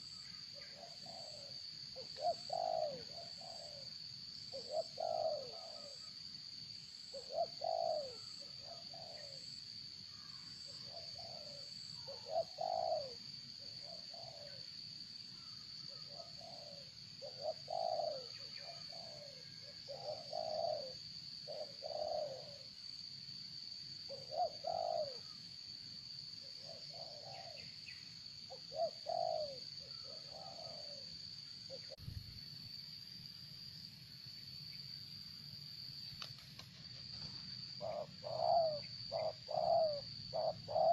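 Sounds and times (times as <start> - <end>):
dove cooing: 0.0 - 6.1, 7.1 - 9.6, 10.2 - 14.6, 15.9 - 22.7, 24.1 - 25.4, 26.4 - 31.1, 31.7 - 32.0, 36.3 - 40.9.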